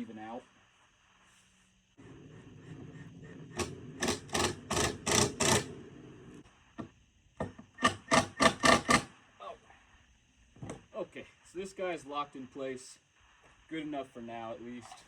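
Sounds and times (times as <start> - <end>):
steady motor hum: 2.0 - 6.4.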